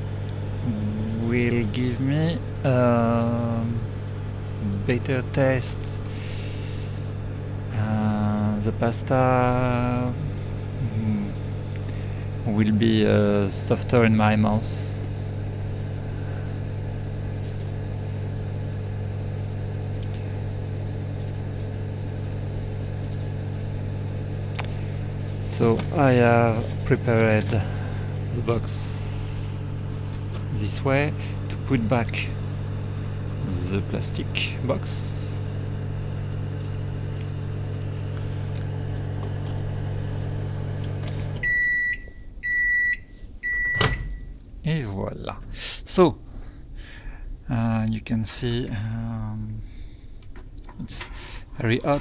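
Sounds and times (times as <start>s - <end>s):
microwave oven humming: 0.0s - 52.0s
microwave beeps: 40.7s - 44.4s.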